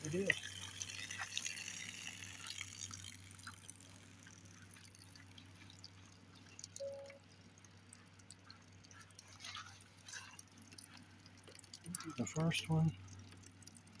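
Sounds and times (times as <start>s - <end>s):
water dripping and trickling: 0.0s - 14.0s
small ticks: 0.3s - 14.0s
brief tone: 6.8s - 7.2s.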